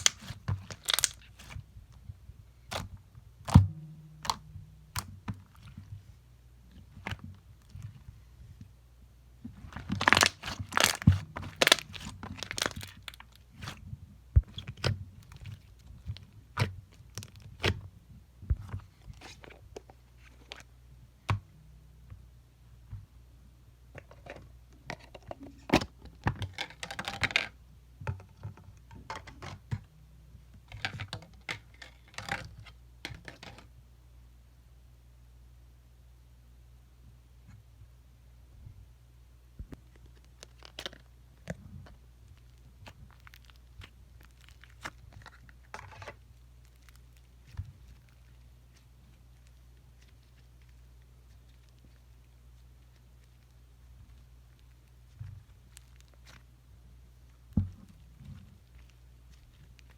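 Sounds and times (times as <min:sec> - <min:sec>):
packaging crinkling and crunching: 0:00.0 - 0:01.6, 0:09.6 - 0:13.8, 0:39.8 - 0:56.5, 0:57.3 - 0:59.9.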